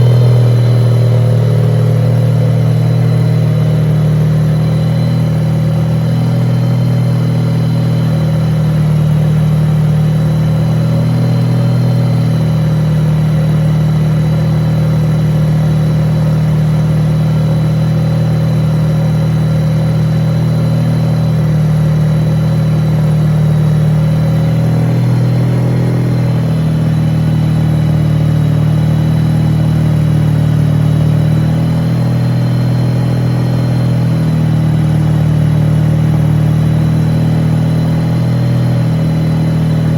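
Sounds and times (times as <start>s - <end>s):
rotary engine running: 0.0s - 14.9s.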